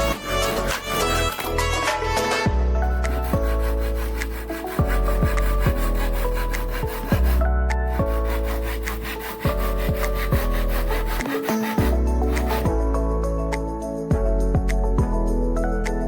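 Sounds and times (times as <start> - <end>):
saw cutting wood: 0.0 - 1.8, 2.9 - 12.7
background music: 0.0 - 16.0.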